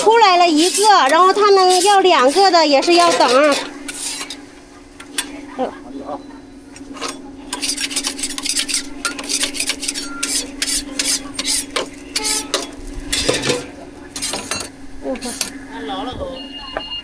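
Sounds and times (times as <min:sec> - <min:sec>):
metal utensils scraping a pan: 0:00.0 - 0:05.6, 0:06.7 - 0:15.6
steady hum: 0:00.0 - 0:16.8.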